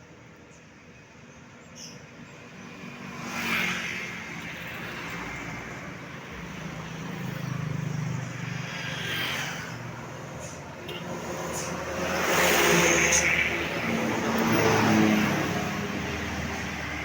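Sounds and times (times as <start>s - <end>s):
vehicle passing close: 6.2s - 17.0s.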